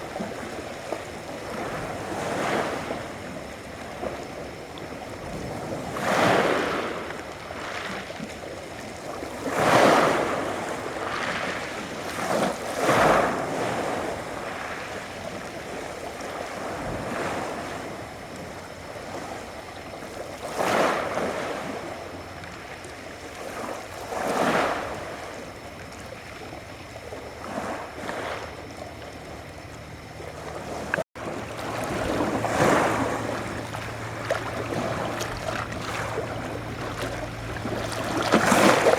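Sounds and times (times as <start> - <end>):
low steady hum: 25.3 - 38.9
sea waves washing onto shore: 30.0 - 38.9.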